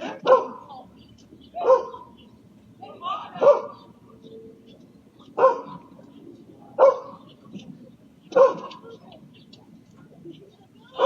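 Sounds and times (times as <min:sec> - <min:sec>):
dog barking: 0:00.2 - 0:00.7, 0:01.6 - 0:02.2, 0:03.4 - 0:03.9, 0:05.4 - 0:05.9, 0:06.8 - 0:07.3, 0:08.3 - 0:08.8.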